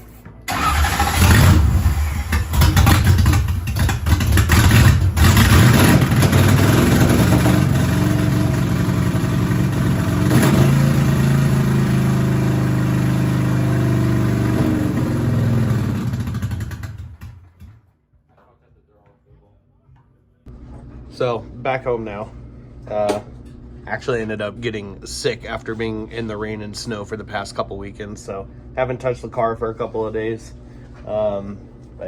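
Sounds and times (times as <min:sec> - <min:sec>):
car engine revving hard: 0:00.5 - 0:16.9.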